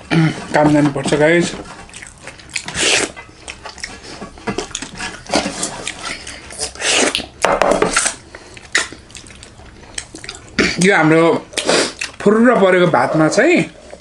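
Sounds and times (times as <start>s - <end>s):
food mixed and chewed: 0.2s - 14.0s.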